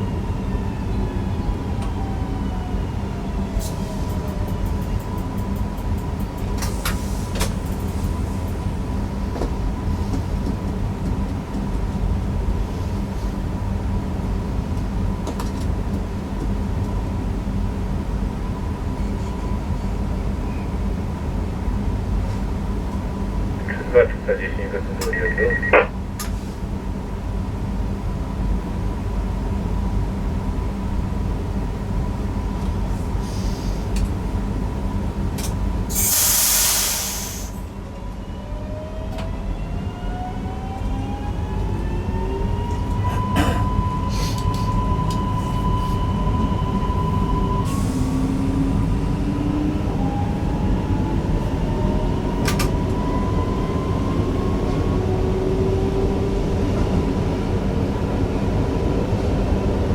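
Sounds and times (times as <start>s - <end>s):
train running rumble: 1.5s - 37.6s
loud air hiss: 35.9s - 37.6s.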